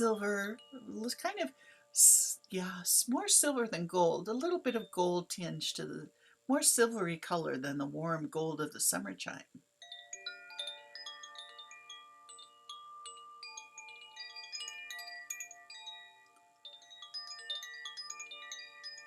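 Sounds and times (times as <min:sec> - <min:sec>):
wind chime ringing: 0:00.0 - 0:02.6, 0:09.8 - 0:19.0.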